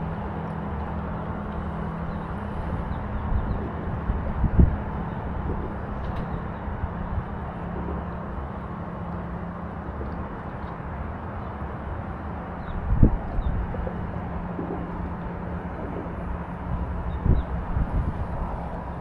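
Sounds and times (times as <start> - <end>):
low motor hum: 0.0 - 19.0
wind rumble on microphone: 0.0 - 19.0.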